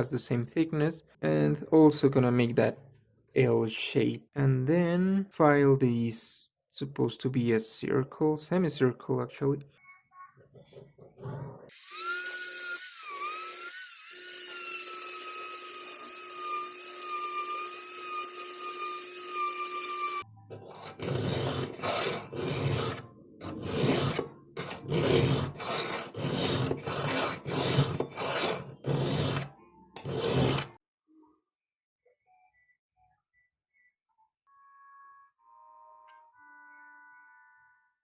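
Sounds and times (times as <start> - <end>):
power grinder on steel: 11.7 - 20.2
hand file on metal: 11.7 - 30.8.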